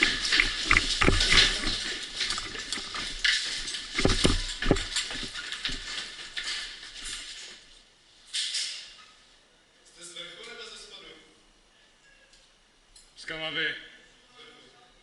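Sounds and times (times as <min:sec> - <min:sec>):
footsteps: 0:00.0 - 0:07.9
clothing and gear rustling: 0:00.0 - 0:08.1.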